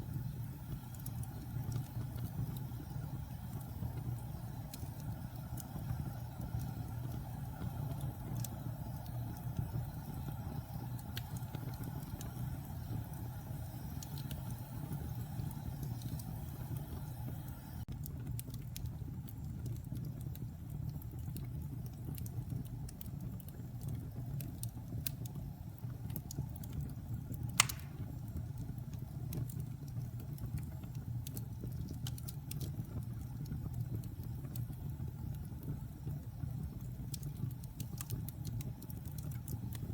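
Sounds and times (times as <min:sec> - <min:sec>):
fire popping: 0:00.0 - 0:39.9
wood fire crackling: 0:00.0 - 0:39.9.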